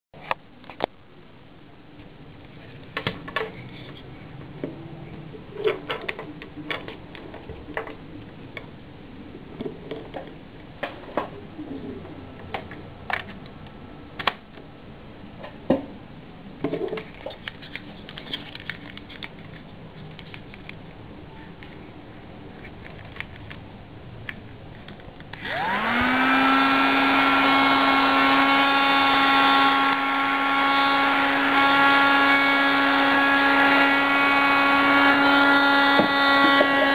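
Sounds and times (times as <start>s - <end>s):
small vacuum motor whining: 25.4s - 36.9s.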